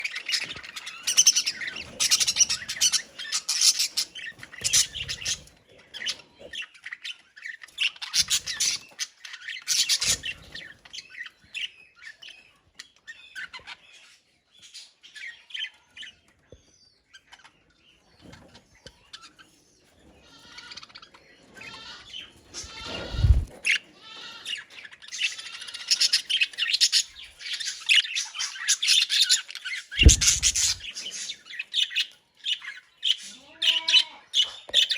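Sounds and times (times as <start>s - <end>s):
budgerigars chattering and chirping: 0.0s - 12.5s, 20.5s - 23.8s, 24.5s - 34.9s
low thump: 30.0s - 30.8s.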